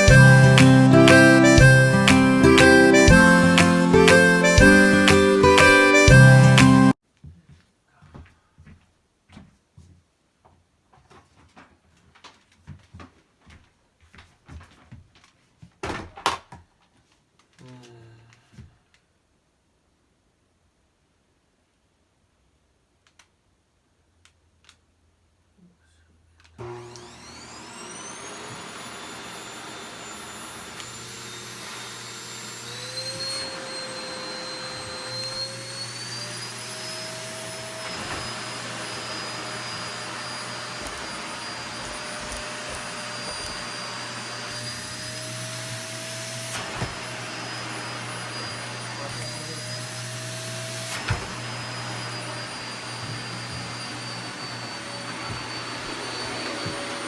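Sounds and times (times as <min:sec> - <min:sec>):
vacuum cleaner motor whine: 0:00.0 - 0:07.0, 0:26.6 - 0:57.0.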